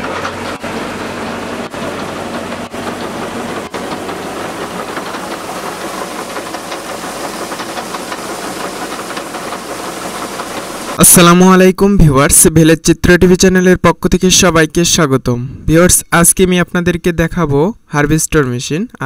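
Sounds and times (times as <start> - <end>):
combine harvester running: 0.0 - 11.3.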